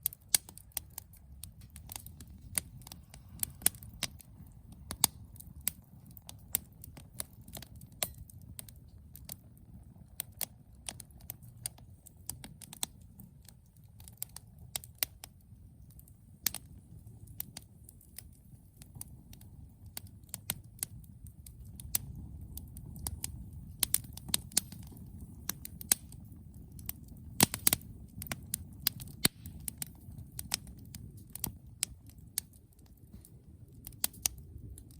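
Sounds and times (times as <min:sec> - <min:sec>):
low steady rumble: 0:00.0 - 0:13.8
burning wood crackling and popping: 0:00.0 - 0:34.9.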